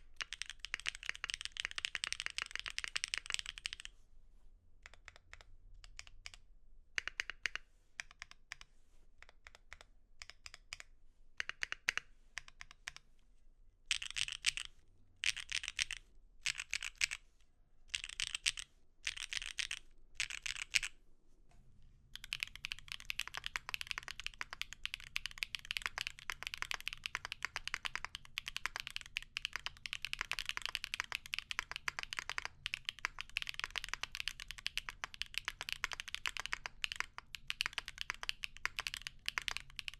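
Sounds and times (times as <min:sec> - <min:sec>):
mechanical keyboard typing: 0:00.2 - 0:03.9, 0:13.9 - 0:17.2, 0:17.9 - 0:20.9, 0:22.2 - 0:39.9.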